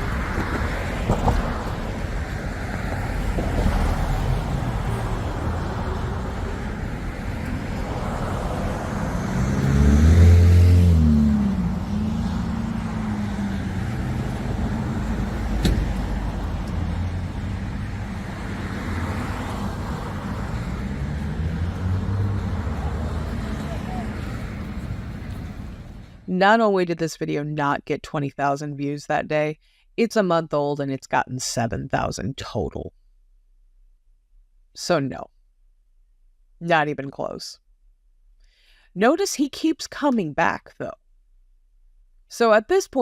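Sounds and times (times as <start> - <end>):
loud vehicle passing close: 0.0 - 26.3
street traffic going by: 0.0 - 26.3.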